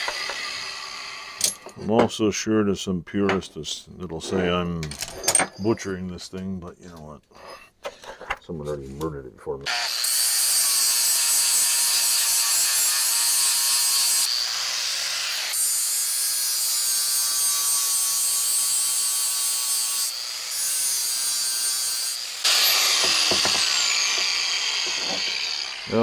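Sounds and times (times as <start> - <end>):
grinder grinding metal: 0.0 - 2.0, 9.7 - 26.0.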